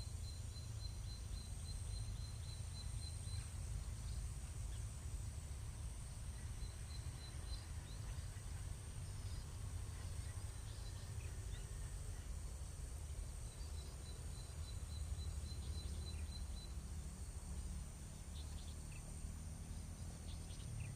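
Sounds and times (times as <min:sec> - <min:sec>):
high-pitched insect chorus: 0:00.0 - 0:20.9
low steady rumble: 0:00.0 - 0:20.9.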